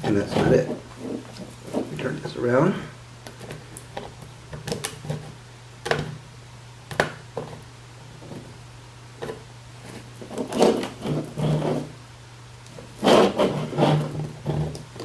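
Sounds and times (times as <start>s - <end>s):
cables rattling and rubbing: 0.0s - 6.1s, 7.4s - 8.5s, 9.2s - 12.0s, 12.7s - 15.0s.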